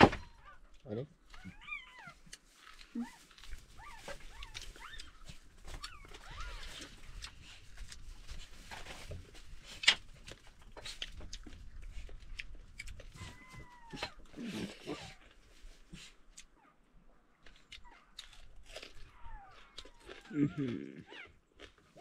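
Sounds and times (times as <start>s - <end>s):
dog whining: 2.9s - 6.9s, 13.1s - 15.4s, 18.9s - 21.4s.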